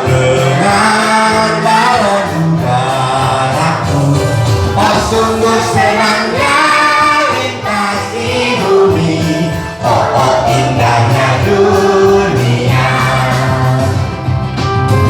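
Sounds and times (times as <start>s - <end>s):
person singing: 0.0s - 14.2s
instrumental backing music: 0.0s - 15.0s.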